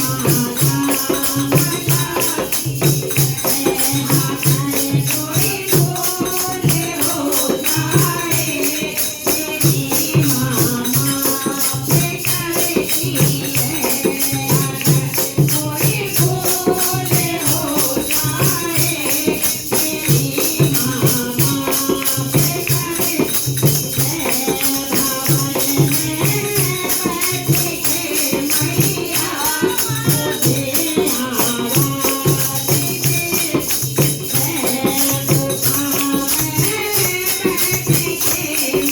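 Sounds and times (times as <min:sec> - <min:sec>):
person singing devotional song: 0:00.0 - 0:38.9
steady percussion beat: 0:00.0 - 0:38.9.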